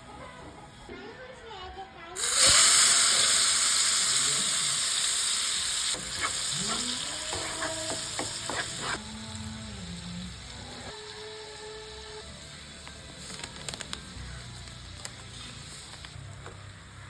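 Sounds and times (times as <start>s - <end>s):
food sizzling in hot oil: 2.2s - 13.3s
utensil scraping a pan: 6.0s - 9.0s.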